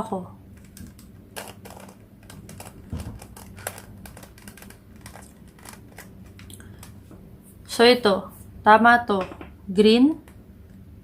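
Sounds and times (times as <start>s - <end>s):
puzzle cube clicking: 0.6s - 7.0s.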